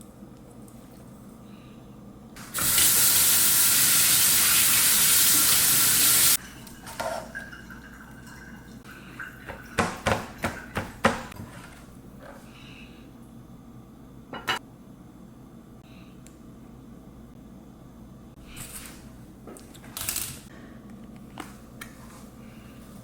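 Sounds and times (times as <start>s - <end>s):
kitchen tap running into sink: 2.5s - 11.3s
dishes clinking: 14.4s - 14.6s.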